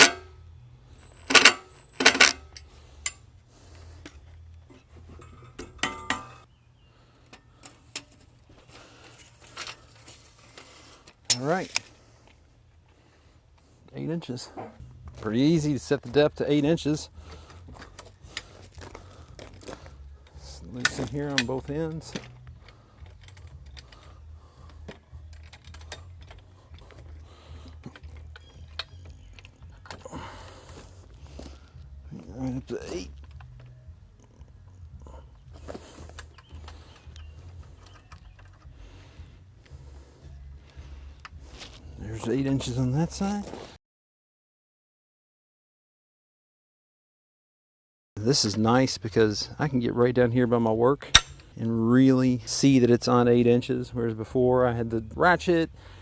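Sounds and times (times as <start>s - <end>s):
metal frame clanking: 0.0s - 3.3s, 4.1s - 6.5s, 51.1s - 51.6s
steady low hum: 0.0s - 42.5s
light metal clicks and knocks: 4.0s - 6.5s.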